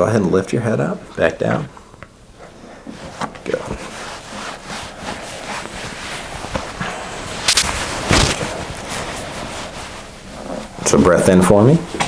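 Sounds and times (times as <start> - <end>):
sharp swishing snaps: 7.5 - 8.5.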